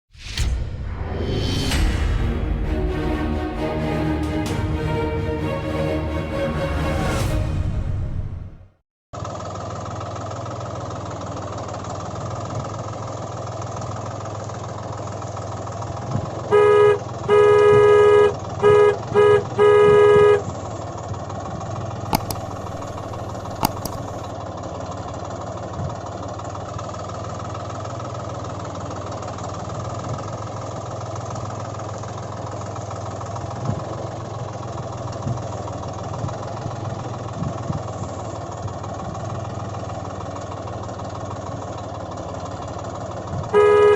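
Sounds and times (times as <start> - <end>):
horn honking: 2.6 - 8.4, 16.5 - 20.5, 43.5 - 43.9
tractor engine running: 9.2 - 43.9
sharp clicks: 22.1 - 24.2.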